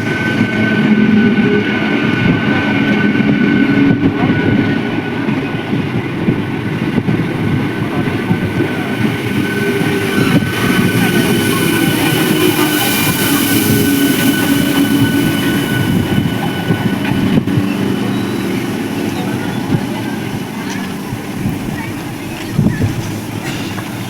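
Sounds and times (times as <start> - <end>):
train wheels rumbling and rattling: 0.0 - 24.0
thin high whine: 7.8 - 24.0.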